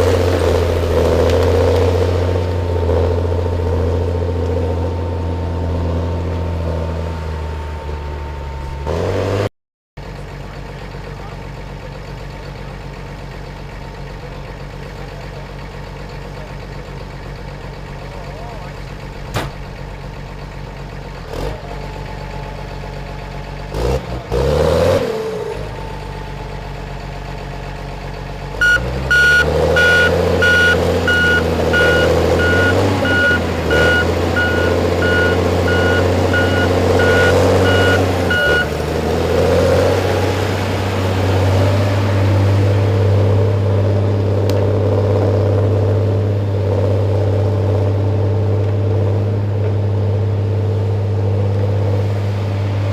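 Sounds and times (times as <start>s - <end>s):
heavy machine engine running: 0.0s - 9.4s, 10.0s - 52.9s
reversing alarm beeps: 28.6s - 38.7s.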